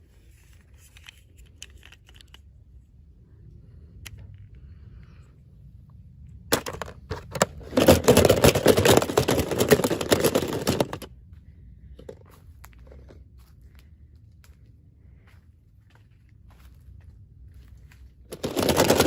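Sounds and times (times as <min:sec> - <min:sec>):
toy packaging clicks: 0:00.7 - 0:02.5, 0:06.5 - 0:11.1, 0:18.3 - 0:19.0
packaging rustling: 0:06.5 - 0:11.1, 0:18.3 - 0:19.0.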